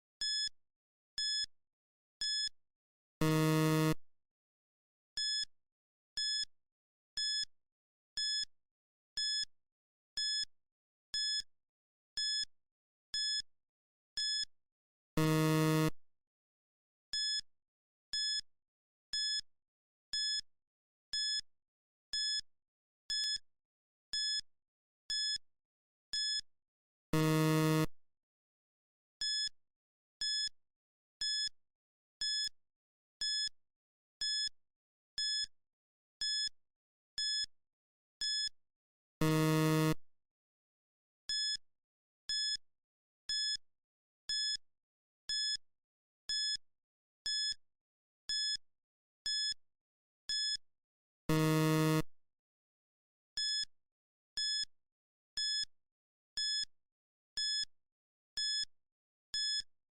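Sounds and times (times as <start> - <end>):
long low timer buzz: 51.3 - 52.0.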